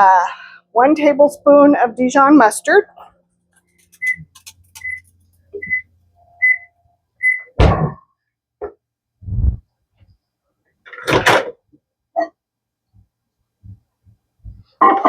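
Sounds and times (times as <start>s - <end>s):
microwave beeping: 4.0s - 7.6s
loud thunk: 7.6s - 8.0s.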